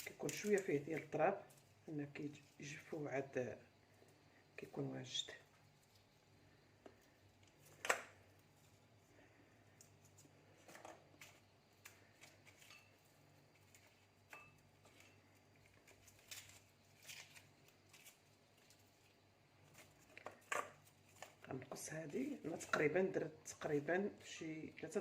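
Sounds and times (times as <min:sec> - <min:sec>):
faint clicks and rustles of food: 0:00.0 - 0:25.0.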